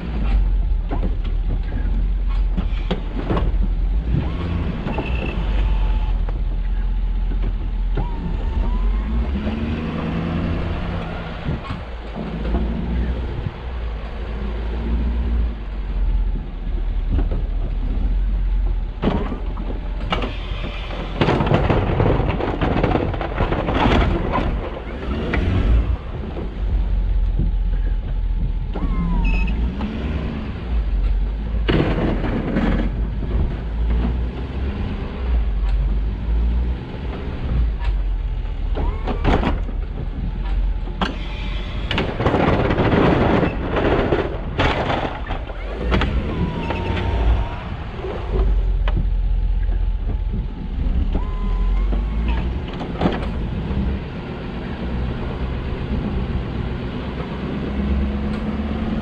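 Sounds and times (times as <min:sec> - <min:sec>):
low road rumble: 0:00.0 - 0:59.0
rushes of noise: 0:08.1 - 0:59.0.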